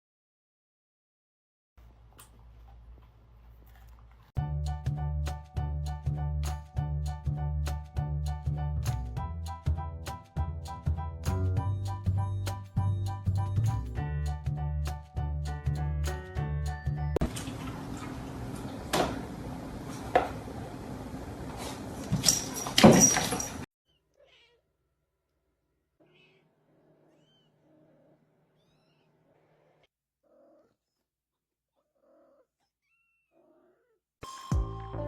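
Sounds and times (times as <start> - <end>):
cat meowing: 23.9 - 24.7, 26.0 - 27.9, 28.6 - 31.0.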